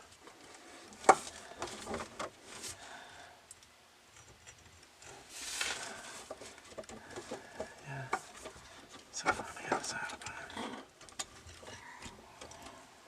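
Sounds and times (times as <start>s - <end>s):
brief rustle: 5.3s - 6.6s.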